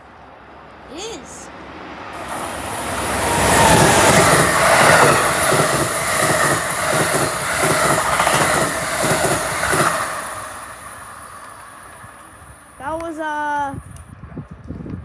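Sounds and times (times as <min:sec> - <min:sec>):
train passing: 0:00.0 - 0:14.1
train wheels clickety-clack: 0:02.2 - 0:13.2.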